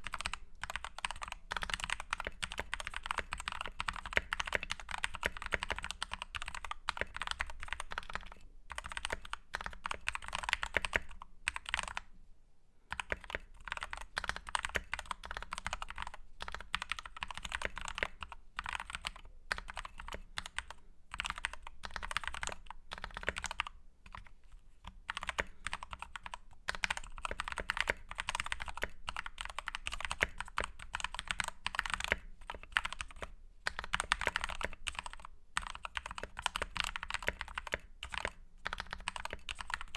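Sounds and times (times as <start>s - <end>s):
mechanical keyboard typing: 0.0s - 12.1s, 12.9s - 24.3s, 25.0s - 39.9s.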